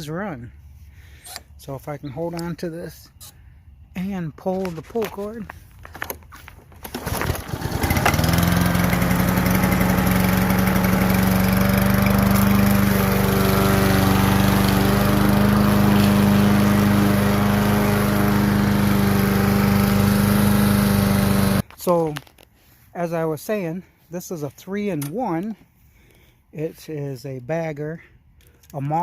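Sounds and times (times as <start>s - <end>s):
lawn mower engine running: 6.7s - 21.6s.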